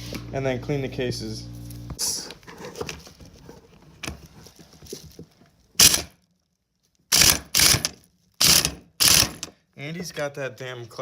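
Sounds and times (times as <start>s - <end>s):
hand tool bursts on engine: 5.8s - 6.2s, 7.1s - 9.5s.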